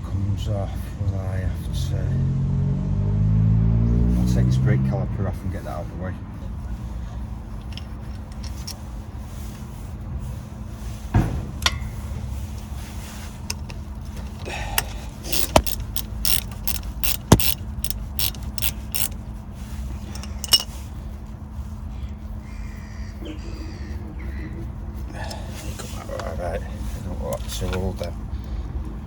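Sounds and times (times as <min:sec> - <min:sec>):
steady low hum: 0:04.0 - 0:29.0
ratchet spanner clicking: 0:14.8 - 0:19.2
sharp metal knocks: 0:15.4 - 0:19.1.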